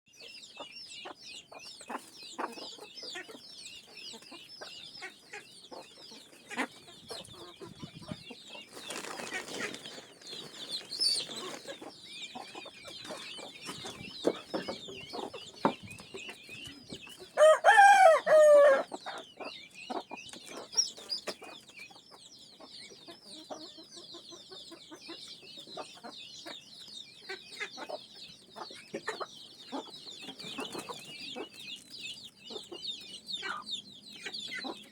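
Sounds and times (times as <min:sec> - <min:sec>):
chickens clucking: 0:00.1 - 0:34.9
constant high chirping: 0:00.1 - 0:34.9
rooster crowing: 0:17.4 - 0:18.9.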